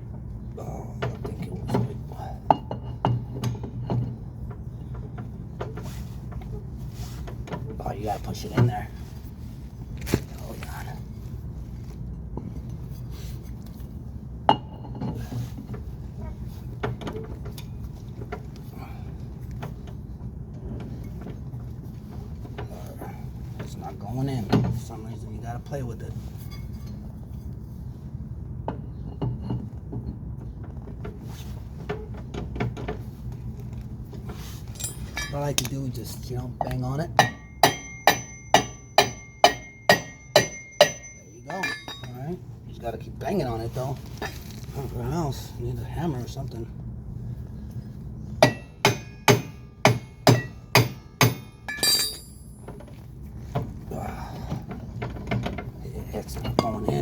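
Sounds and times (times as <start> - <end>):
ringing metallic clatter: 34.7 - 35.7, 37.2 - 42.4, 48.4 - 52.9
metal parts clicking and knocking: 50.3 - 52.8.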